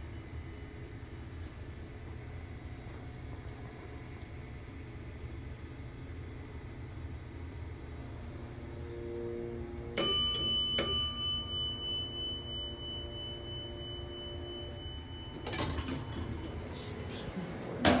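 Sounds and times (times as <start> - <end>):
elevator chime dings: 8.8 - 18.0.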